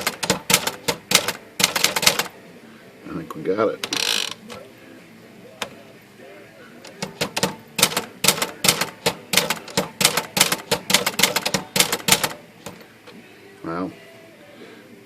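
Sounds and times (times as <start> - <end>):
manual typewriter typing: 0.0 - 2.3, 6.9 - 12.8.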